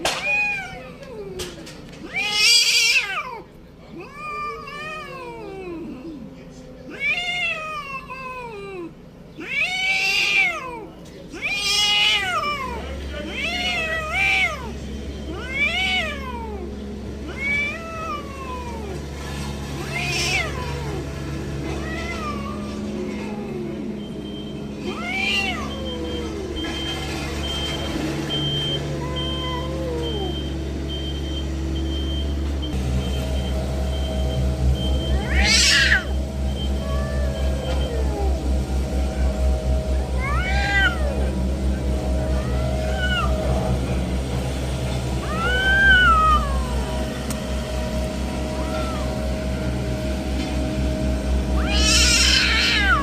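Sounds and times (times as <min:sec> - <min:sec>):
cat meowing: 0:00.1 - 0:06.2, 0:06.9 - 0:16.7, 0:17.3 - 0:19.0, 0:19.8 - 0:21.0, 0:21.6 - 0:23.9, 0:24.8 - 0:26.8, 0:28.3 - 0:30.5, 0:35.0 - 0:38.5, 0:40.2 - 0:41.3, 0:42.3 - 0:43.5, 0:45.2 - 0:47.1, 0:48.4 - 0:49.7, 0:51.5 - 0:53.0
steady low hum: 0:36.0 - 0:53.0.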